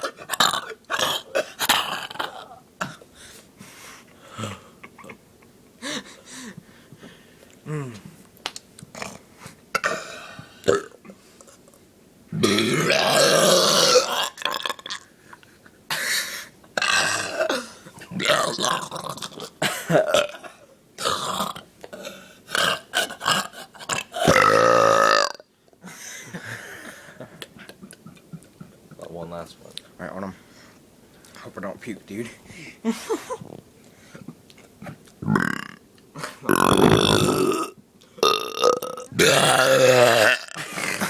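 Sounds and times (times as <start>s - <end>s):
person burping loudly: 0.0s - 2.6s, 12.4s - 15.0s, 16.8s - 21.6s, 22.5s - 25.5s, 35.2s - 41.0s.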